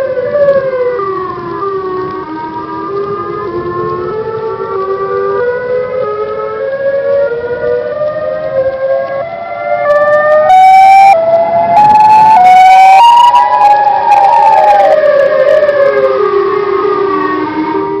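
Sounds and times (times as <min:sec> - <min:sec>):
reversed warning siren wailing: 0:00.0 - 0:18.0.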